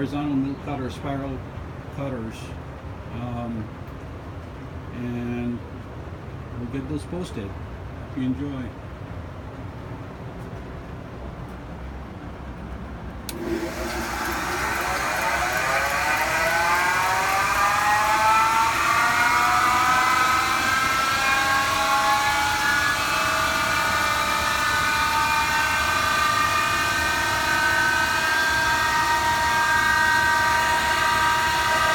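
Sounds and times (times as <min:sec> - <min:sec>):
electric motor whine and hum: 0:13.3 - 0:31.9.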